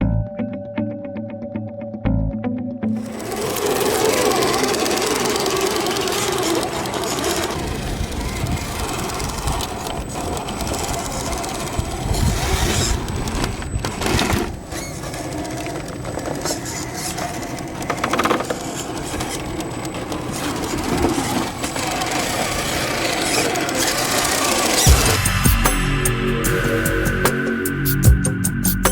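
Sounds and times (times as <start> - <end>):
drivetrain clicking: 3.0 - 25.8
electric motor running: 3.0 - 27.8.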